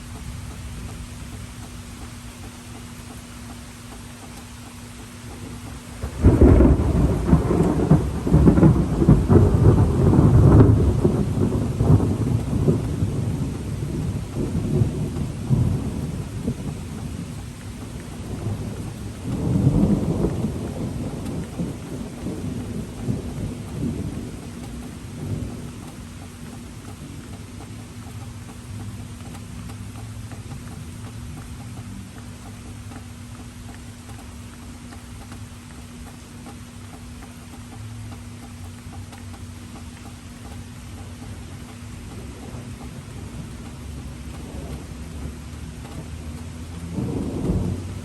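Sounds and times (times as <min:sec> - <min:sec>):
steady rain: 0:00.0 - 0:48.0
thunder rumbling: 0:05.4 - 0:32.5, 0:41.2 - 0:48.0.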